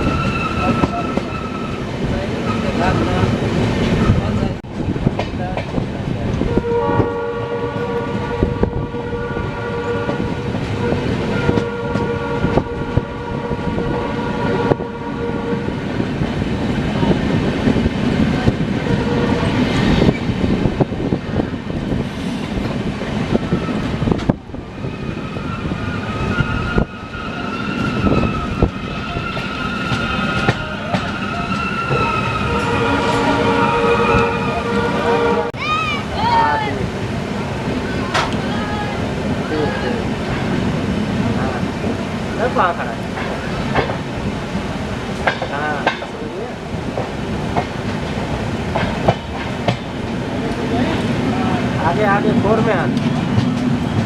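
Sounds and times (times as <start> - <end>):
train wheels rumbling on rails: 0.0 - 54.0
multi-tone train horn: 6.4 - 16.0, 18.8 - 19.8, 26.3 - 35.6.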